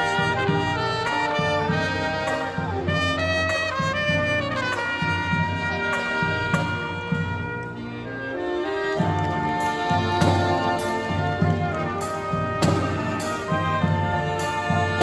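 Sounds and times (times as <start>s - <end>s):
trumpets and trombones melody: 0.0s - 15.0s.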